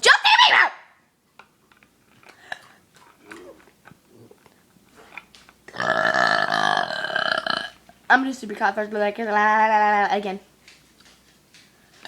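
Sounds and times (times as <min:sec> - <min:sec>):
mouth and throat clicks: 0:02.2 - 0:07.9
girl burping: 0:05.7 - 0:07.8.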